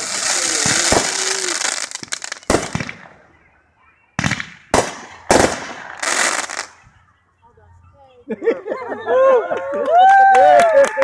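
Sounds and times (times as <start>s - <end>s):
fireworks crackling and banging: 0.0s - 3.5s, 4.1s - 7.0s
loud firework reports: 0.0s - 6.9s.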